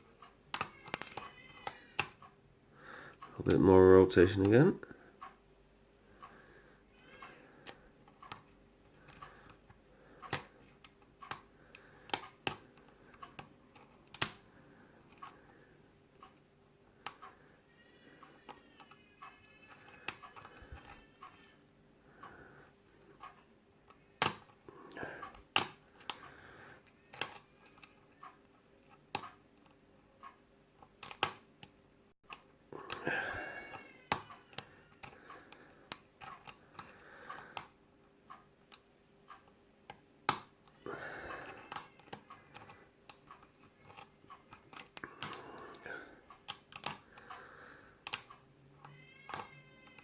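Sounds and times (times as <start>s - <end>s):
lock pick clicking and scraping: 13.2s - 14.4s, 27.1s - 28.0s, 31.0s - 31.7s, 34.1s - 37.0s, 41.5s - 45.4s, 46.4s - 47.0s, 49.3s - 50.0s.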